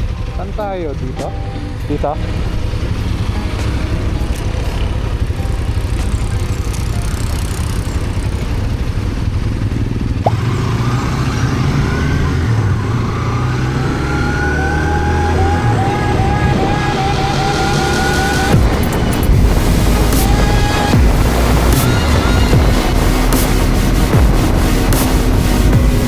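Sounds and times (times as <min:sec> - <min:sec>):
motorcycle running: 0:00.0 - 0:26.0
high whine rising in pitch: 0:10.2 - 0:26.0
wind rumble on microphone: 0:18.4 - 0:26.0.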